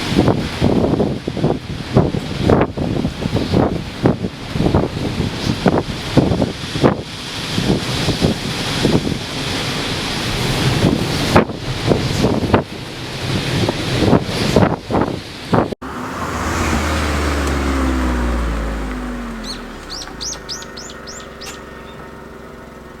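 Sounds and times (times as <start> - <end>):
wind gusting on microphone: 0.0 - 21.3
vehicle passing: 15.8 - 22.4
bird chirping: 18.6 - 22.2.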